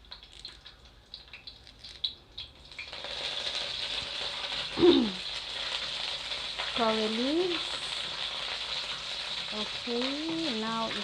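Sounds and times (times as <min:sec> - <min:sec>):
leaves sizzling in hot oil: 0:00.0 - 0:11.0
short falling voice-like sound: 0:04.8 - 0:05.2.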